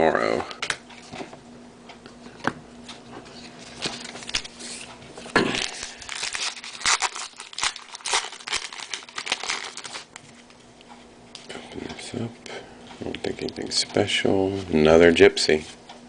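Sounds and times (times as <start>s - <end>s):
wrapper crinkling and tearing: 5.5s - 10.2s.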